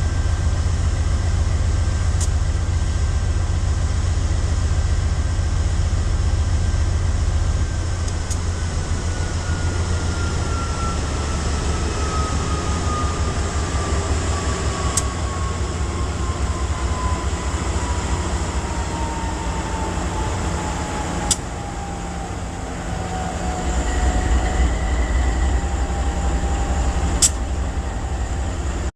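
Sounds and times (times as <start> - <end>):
diesel locomotive engine throbbing: 0.0 - 28.9
falling whine: 0.0 - 28.9
sharp clicks: 27.2 - 27.4.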